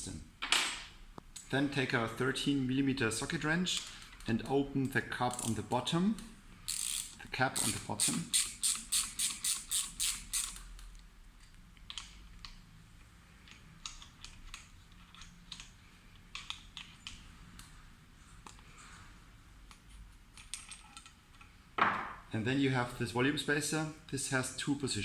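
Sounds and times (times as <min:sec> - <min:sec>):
ratchet wrench clicking: 0:05.3 - 0:05.6, 0:06.2 - 0:10.9.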